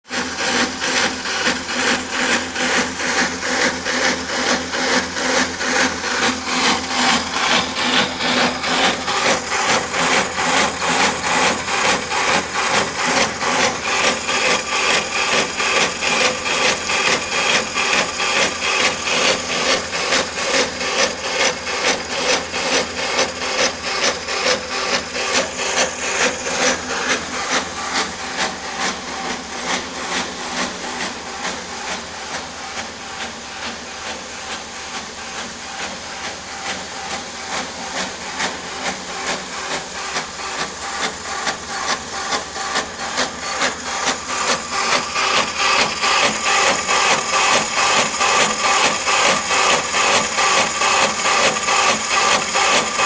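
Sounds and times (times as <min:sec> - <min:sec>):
machine grinding rhythmically: 0:00.1 - 0:53.0.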